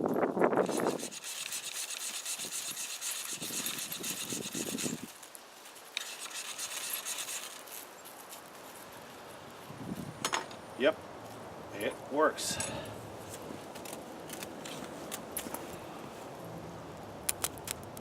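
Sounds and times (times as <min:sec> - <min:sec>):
blade scraping ferrocerium rod: 0:00.6 - 0:05.1, 0:06.0 - 0:07.7
handling rustle: 0:00.6 - 0:10.6, 0:13.2 - 0:16.4.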